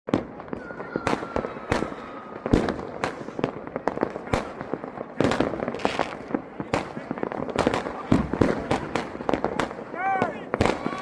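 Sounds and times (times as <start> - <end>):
fireworks and firecrackers banging: 0.1 - 11.0
faint firework whistle: 0.5 - 2.7.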